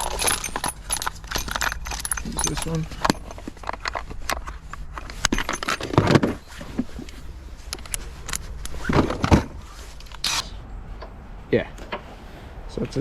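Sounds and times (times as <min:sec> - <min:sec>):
small metal parts clinking: 0:00.0 - 0:06.6.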